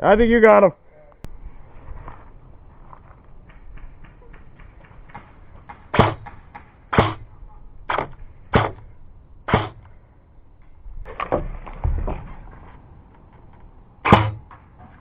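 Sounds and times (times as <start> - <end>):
airsoft rifle shots: 3.7 - 10.0, 14.0 - 14.6
knocks and rustling: 11.0 - 15.0.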